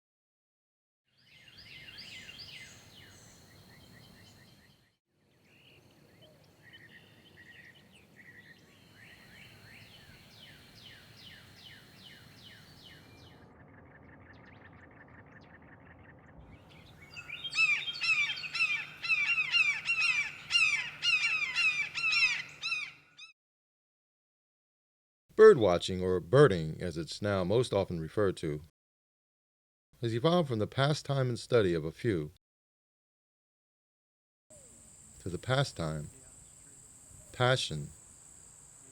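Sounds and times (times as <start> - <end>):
birds chirping and singing: 1.2 - 4.8, 5.6 - 23.3
bird fast trill: 16.6 - 23.3
flock calling rapidly: 17.1 - 23.1.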